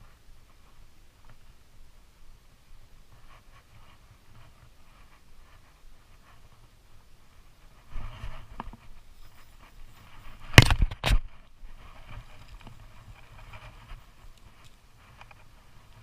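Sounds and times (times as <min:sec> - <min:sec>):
rustling: 0:03.0 - 0:16.0.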